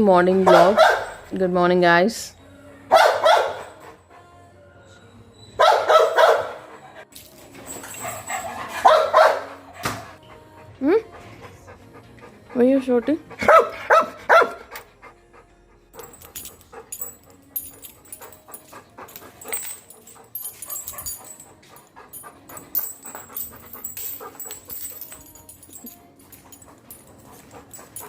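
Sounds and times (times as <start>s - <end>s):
dog panting and whimpering: 6.4s - 28.0s
high thin tinkling: 16.0s - 28.0s.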